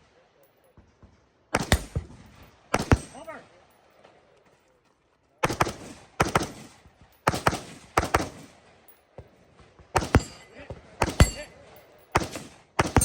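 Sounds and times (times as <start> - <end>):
rifle shots with echo: 1.5 - 4.0, 5.4 - 8.9, 9.6 - 13.0.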